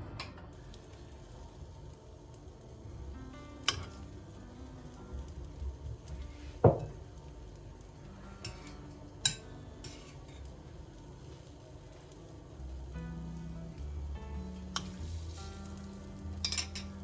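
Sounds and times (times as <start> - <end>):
light ticks of utensils: 3.6 - 4.2, 5.1 - 12.2, 14.6 - 15.1, 15.7 - 17.0.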